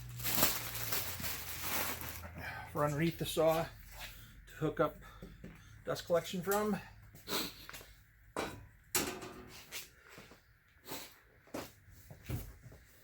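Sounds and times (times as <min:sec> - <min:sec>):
cardboard packaging rustling: 0:00.0 - 0:02.4.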